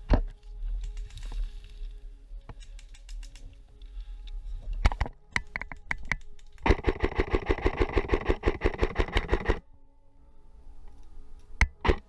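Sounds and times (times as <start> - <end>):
airsoft rifle firing: 6.6 - 9.6, 11.6 - 12.0.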